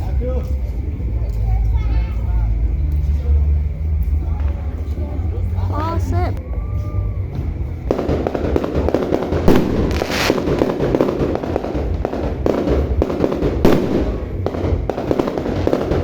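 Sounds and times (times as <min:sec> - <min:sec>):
fireworks crackling pops: 0:07.2 - 0:16.0
fireworks sharp bangs: 0:07.3 - 0:16.0.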